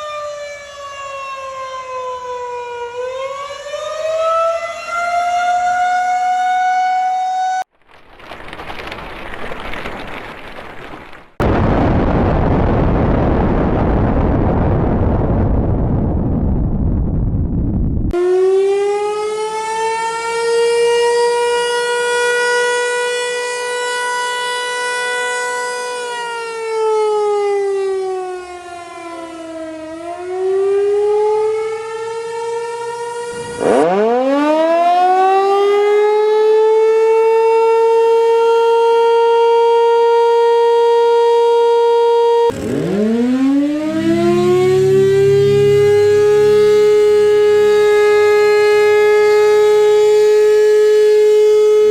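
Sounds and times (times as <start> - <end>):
sirens winding up: 0.0 - 7.6, 18.2 - 51.9
tornado siren steady tone: 0.0 - 7.7, 11.4 - 51.9.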